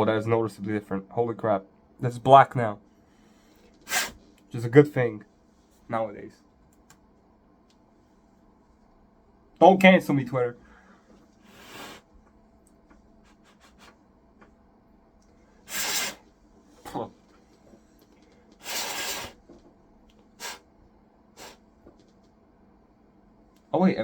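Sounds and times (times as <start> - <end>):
rubbing strokes on keyboard: 12.9 - 14.1, 18.5 - 19.6.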